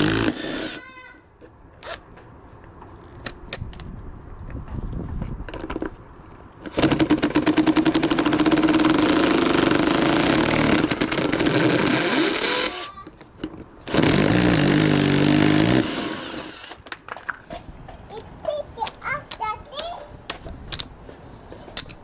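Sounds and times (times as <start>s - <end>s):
small motor running: 13.9s - 16.8s.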